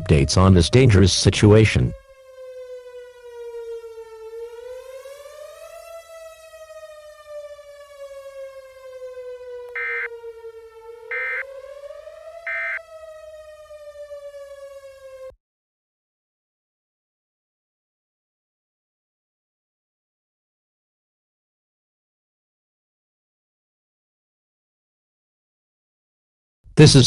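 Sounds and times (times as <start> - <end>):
civil defense siren wailing: 0.0 - 15.4
short electronic beeps: 9.8 - 10.1, 11.1 - 11.4, 12.5 - 12.8.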